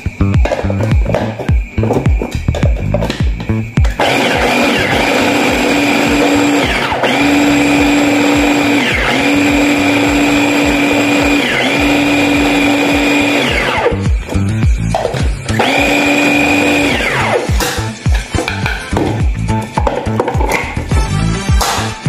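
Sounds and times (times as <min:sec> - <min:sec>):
electric blender motor: 0:03.9 - 0:14.2, 0:15.5 - 0:17.8.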